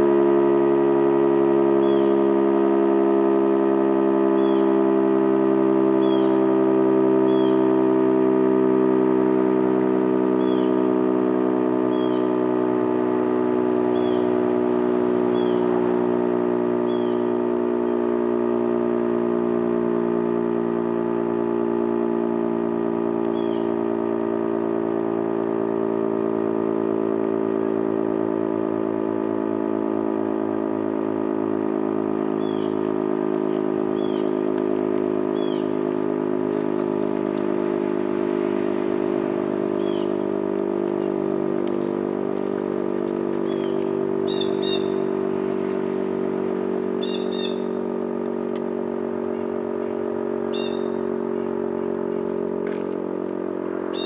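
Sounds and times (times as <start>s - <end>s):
warning siren droning tone: 0.0s - 54.0s
bird chirps: 43.5s - 45.0s, 47.0s - 47.7s, 50.5s - 51.0s.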